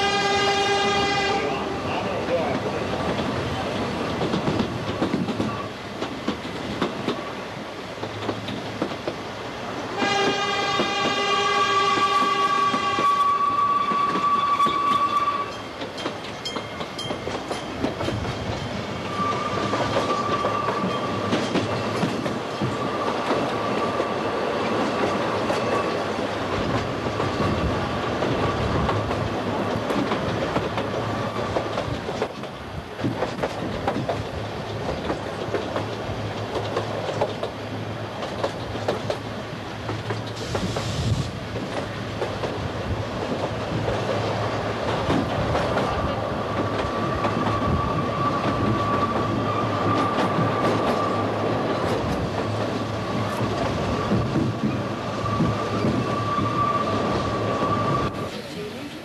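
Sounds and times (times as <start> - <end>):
train horn: 0.0 - 1.6, 10.0 - 15.6, 19.1 - 21.2
wheels clicking over rail joints: 2.3 - 7.4, 13.9 - 56.6
wheel squeal: 19.0 - 21.2, 55.2 - 58.1.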